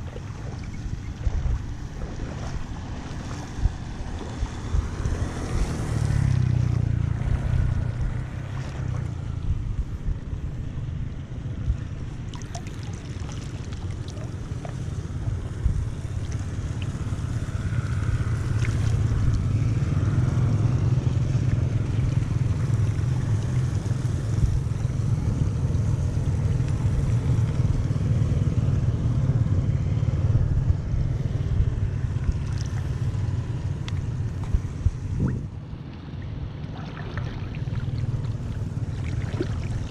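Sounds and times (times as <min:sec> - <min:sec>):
floodwater rushing into drain: 0:12.2 - 0:27.8, 0:31.9 - 0:39.9.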